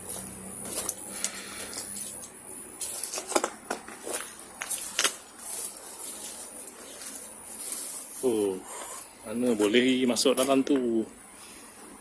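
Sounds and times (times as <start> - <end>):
footsteps through dry undergrowth: 0.0 - 10.7
leaves crackling: 0.0 - 10.8
steady high-pitched whine: 0.0 - 12.0
twigs snapping: 0.7 - 7.9.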